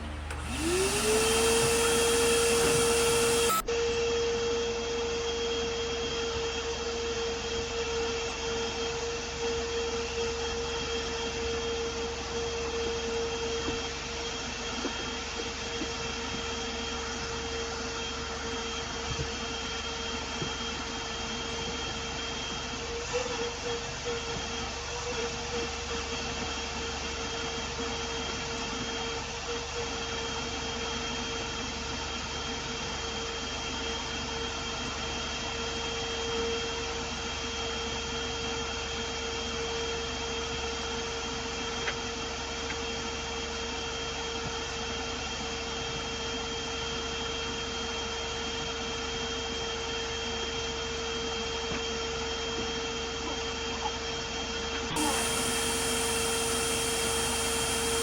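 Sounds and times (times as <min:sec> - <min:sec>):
constant hum: 0:00.0 - 0:03.7, 0:55.0 - 0:58.0
small electric motor whirring: 0:00.0 - 0:03.8, 0:55.0 - 0:58.0.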